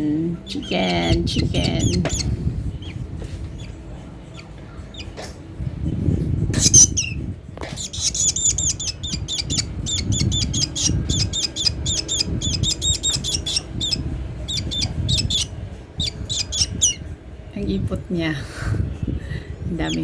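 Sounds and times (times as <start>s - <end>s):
baby bird begging calls: 0.5s - 5.2s, 6.6s - 17.0s, 19.8s - 20.0s.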